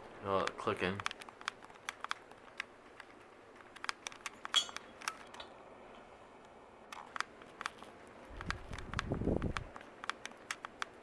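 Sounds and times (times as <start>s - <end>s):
ceiling fan clicking: 0.0s - 5.6s, 6.4s - 11.0s.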